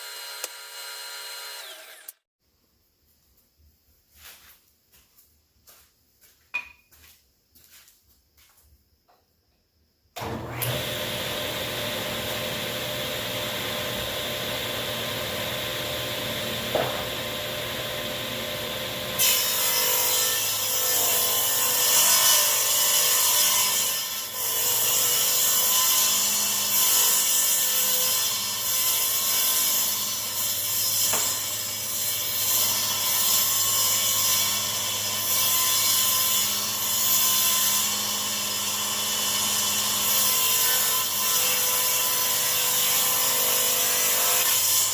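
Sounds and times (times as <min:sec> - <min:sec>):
saw blade ripping wood: 0:00.0 - 0:02.2, 0:19.2 - 0:41.9
table saw humming: 0:00.0 - 0:02.3, 0:10.2 - 0:44.9.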